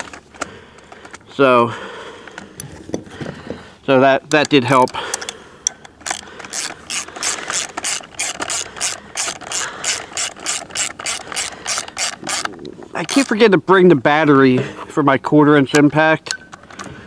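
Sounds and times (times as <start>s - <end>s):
ratchet wrench clicking: 4.3s - 13.4s.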